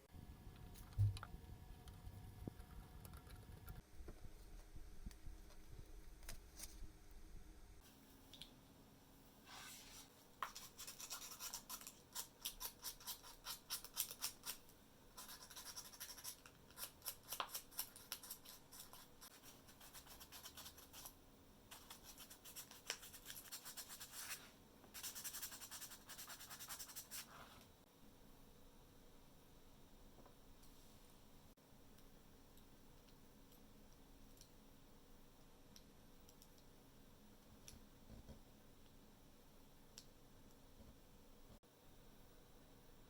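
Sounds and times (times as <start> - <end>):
scratchy brushing strokes: 9.4 - 14.2, 21.7 - 27.6.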